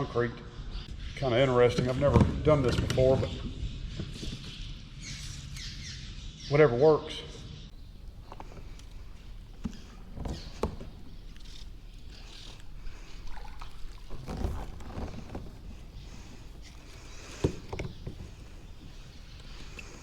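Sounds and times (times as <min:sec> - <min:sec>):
water sloshing: 0:07.7 - 0:20.0.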